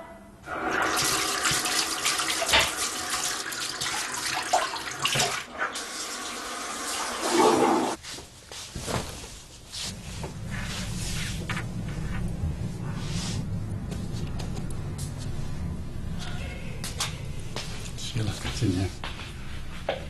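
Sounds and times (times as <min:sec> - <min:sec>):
tap water running into sink: 0:00.8 - 0:08.0.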